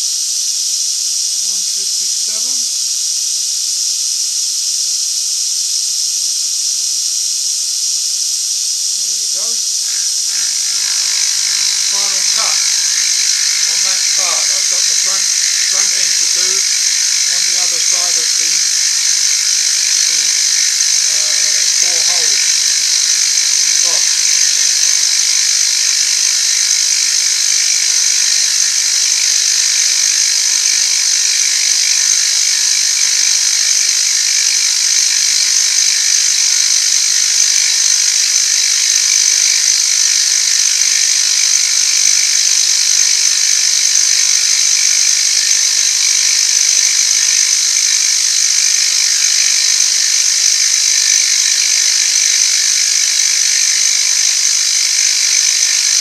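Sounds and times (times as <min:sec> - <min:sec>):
machine tool cutting metal: 0:09.3 - 0:34.4.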